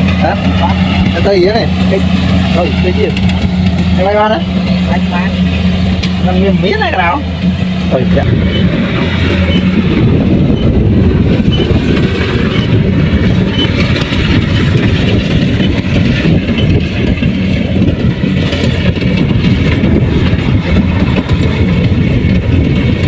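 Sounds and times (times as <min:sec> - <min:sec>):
combine harvester diesel rumble: 0:00.0 - 0:23.0.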